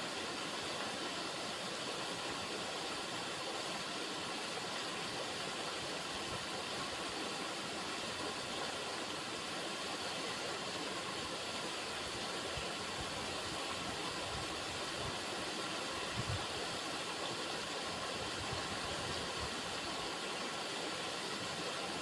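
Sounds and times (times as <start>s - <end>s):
river water running: 0.0s - 22.0s.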